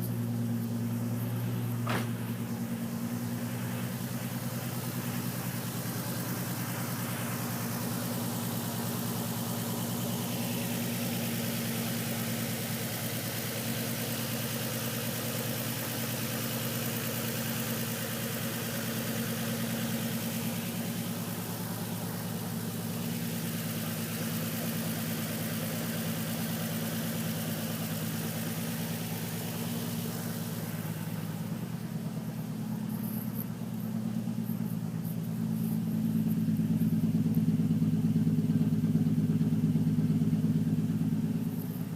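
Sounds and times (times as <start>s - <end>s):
car engine idling: 0.0s - 41.9s.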